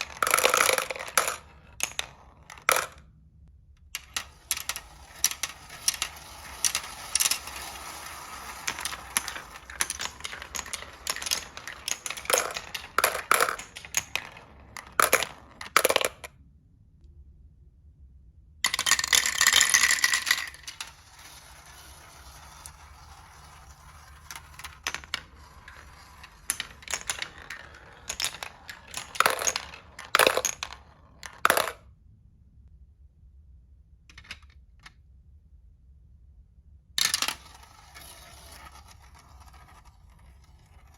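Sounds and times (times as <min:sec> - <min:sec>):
marbles rolling on wooden run: 0:00.0 - 0:03.0, 0:04.0 - 0:16.3, 0:18.7 - 0:31.8, 0:37.0 - 0:40.9.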